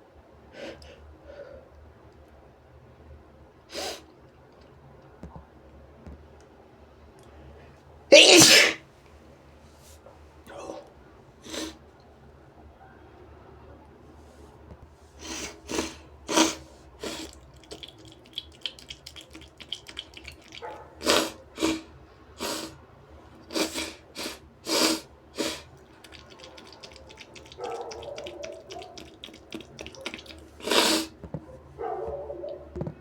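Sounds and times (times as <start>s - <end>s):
man blowing nose and sniffing: 3.7s - 4.0s, 8.1s - 8.8s, 11.4s - 11.8s, 15.2s - 17.4s, 21.0s - 22.8s, 23.5s - 25.7s, 30.1s - 31.2s
wet nasal crackling: 8.1s - 8.8s, 15.2s - 22.8s, 23.5s - 31.2s.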